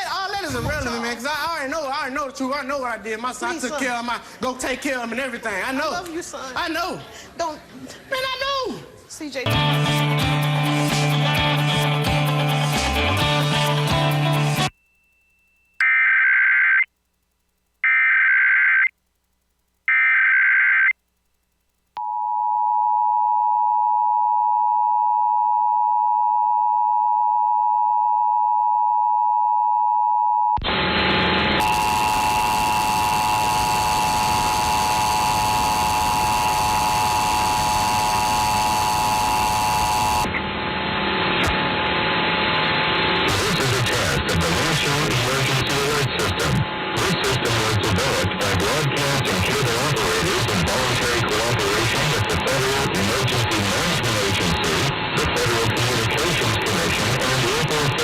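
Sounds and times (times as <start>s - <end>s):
digital data header bursts: 31.6s - 40.3s, 43.3s - 58.0s.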